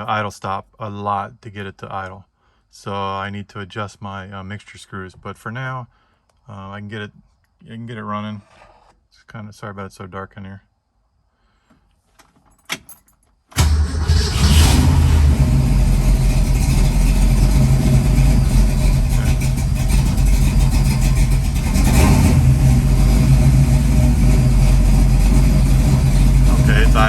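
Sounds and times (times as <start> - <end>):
car engine starting and idling: 13.6 - 27.0.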